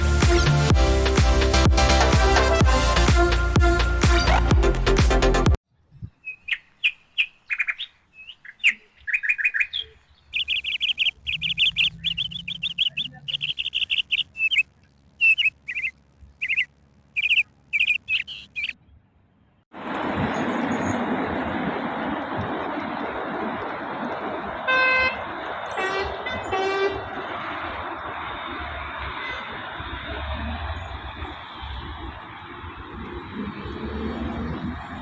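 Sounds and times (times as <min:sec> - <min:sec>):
city street traffic: 0:00.0 - 0:05.6, 0:19.7 - 0:35.0
small birds chirping: 0:05.8 - 0:19.6.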